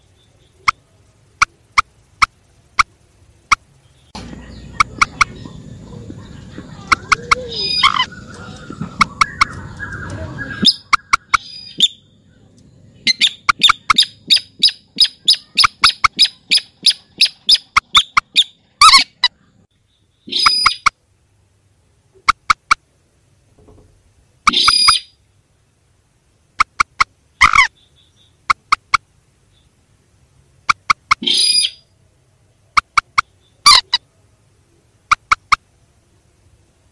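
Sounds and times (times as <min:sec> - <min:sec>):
rail bird rapid sharp notes: 0:00.0 - 0:12.1, 0:12.9 - 0:19.5, 0:26.6 - 0:27.7, 0:28.4 - 0:29.0, 0:30.6 - 0:31.8, 0:32.7 - 0:34.0
harsh bird calls: 0:00.0 - 0:21.0, 0:24.4 - 0:25.2, 0:26.6 - 0:29.8, 0:30.7 - 0:32.0, 0:32.6 - 0:34.1
clusters of clicks: 0:26.6 - 0:27.6.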